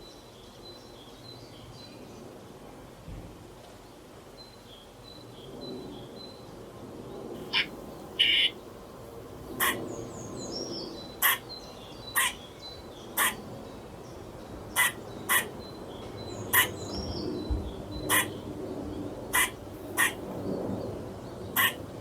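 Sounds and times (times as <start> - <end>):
squirrel barking calls: 7.4 - 17.2, 17.9 - 18.5, 19.3 - 20.4, 21.4 - 22.0
small birds chirping: 7.4 - 22.0.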